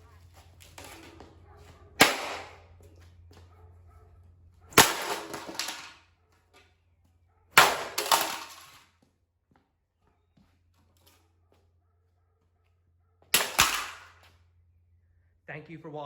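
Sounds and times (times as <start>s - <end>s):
sharp smashing blows: 2.0s - 2.6s, 4.8s - 5.9s, 7.6s - 8.8s, 13.4s - 14.2s
pieces clattering: 4.8s - 6.0s, 7.8s - 8.8s.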